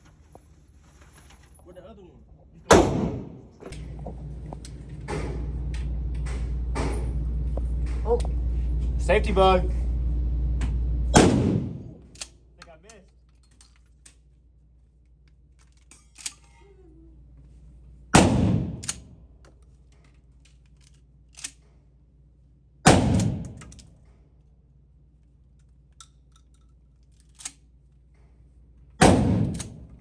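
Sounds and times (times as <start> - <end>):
shotgun shots with echo: 2.7 - 3.5, 11.1 - 12.1, 18.2 - 18.8, 22.9 - 23.6, 29.0 - 29.8
gun handling metallic clicks: 12.0 - 14.4, 15.0 - 16.7, 18.8 - 21.8, 23.4 - 24.0, 25.2 - 28.2, 29.5 - 29.9.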